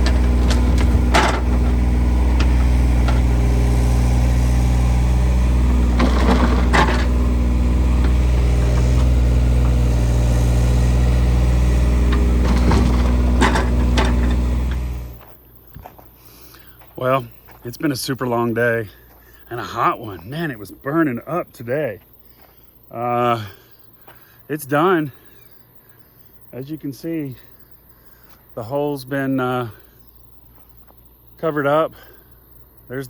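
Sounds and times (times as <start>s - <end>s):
metallic clanks and knocks: 0.0s - 3.9s, 4.9s - 15.1s
large engine running: 0.0s - 15.2s.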